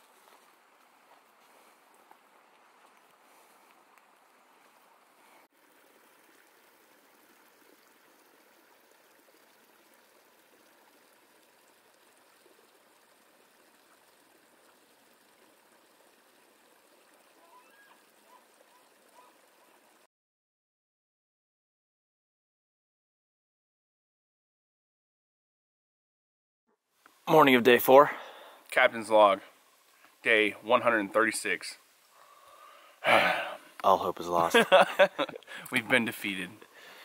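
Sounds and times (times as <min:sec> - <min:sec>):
outdoor ambience hiss: 0:00.0 - 0:20.1, 0:26.8 - 0:37.0
faint bird chirps: 0:17.4 - 0:19.8.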